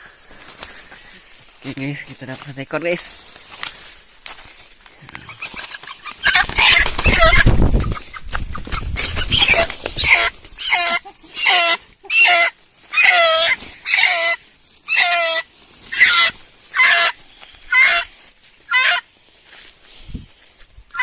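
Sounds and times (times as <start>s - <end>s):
chicken squawking loudly: 5.3s - 18.1s, 18.7s - 19.0s.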